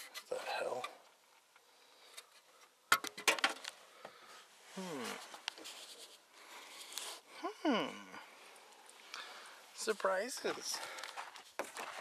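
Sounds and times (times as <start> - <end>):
clicks and knocks of rummaging: 2.2 - 4.2.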